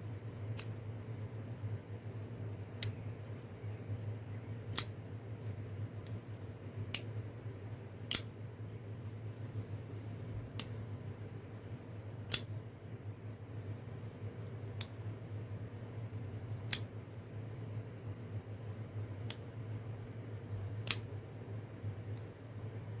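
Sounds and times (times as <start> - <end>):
folding knife blade clicking: 4.7 - 4.9, 8.1 - 8.3, 12.3 - 12.5, 20.8 - 21.0.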